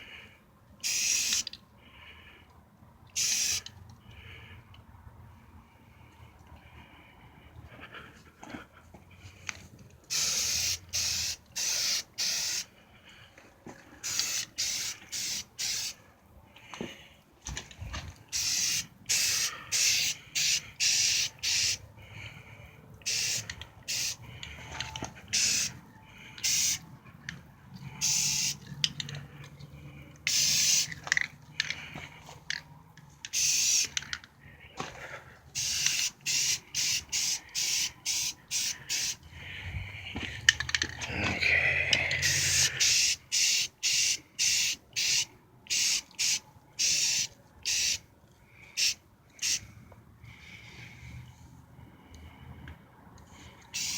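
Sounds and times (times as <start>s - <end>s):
aerosol can spraying: 0.9s - 1.5s, 3.2s - 3.6s, 10.1s - 12.7s, 14.0s - 16.0s, 18.4s - 21.8s, 23.1s - 24.2s, 25.4s - 25.8s, 26.4s - 26.8s, 28.0s - 28.6s, 30.3s - 30.9s, 33.4s - 33.9s, 35.6s - 39.2s, 42.2s - 48.0s, 48.8s - 49.6s.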